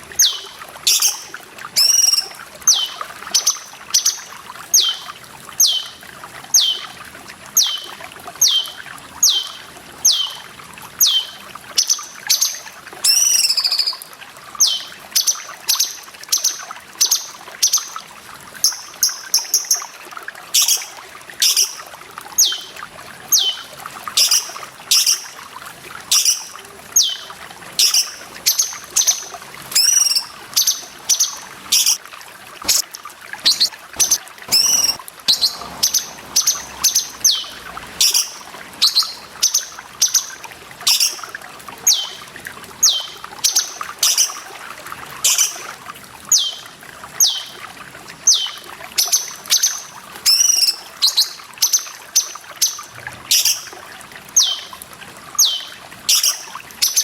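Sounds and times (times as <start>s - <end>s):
running water trickling: 0.0s - 57.0s
bird whistling song: 0.2s - 4.2s, 4.8s - 6.0s, 6.6s - 6.9s, 7.6s - 10.4s, 11.0s - 14.0s, 14.6s - 18.0s, 20.6s - 21.8s, 22.4s - 22.7s, 23.3s - 23.6s, 24.2s - 25.3s, 26.1s - 29.2s, 29.8s - 32.0s, 33.4s - 41.2s, 41.9s - 42.2s, 42.8s - 44.4s, 46.3s - 47.6s, 48.3s - 53.6s, 54.4s - 54.7s, 55.4s - 57.0s.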